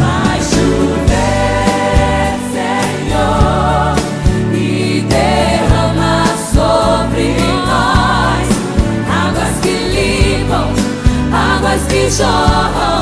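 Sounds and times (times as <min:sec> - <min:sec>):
worship song with band: 0:00.0 - 0:13.0.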